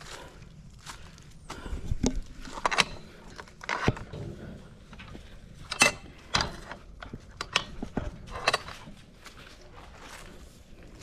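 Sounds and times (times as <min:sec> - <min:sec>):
gate latch clanking and rattling: 0:05.7 - 0:08.8.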